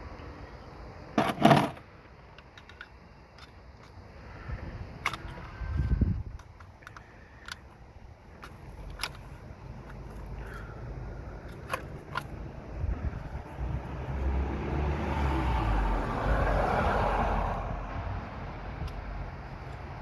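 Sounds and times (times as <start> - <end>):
car rumble and rush: 8.0 - 20.0.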